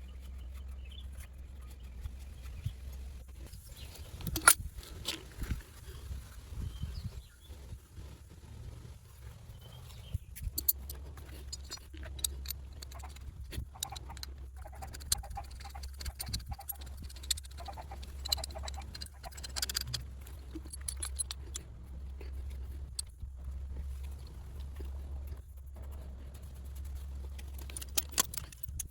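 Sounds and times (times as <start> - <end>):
steady low hum: 0.0 - 28.9
tools clicking and clinking: 4.2 - 4.6, 10.4 - 23.1, 27.4 - 28.9.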